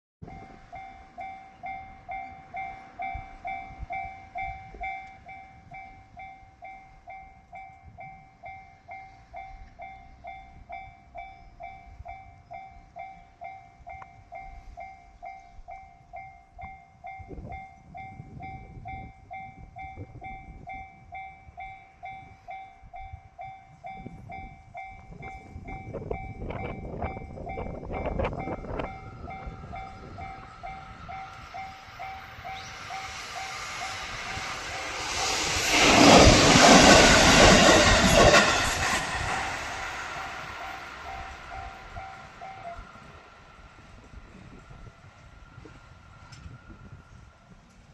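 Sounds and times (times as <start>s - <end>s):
approaching train rumble: 0.2s - 47.9s.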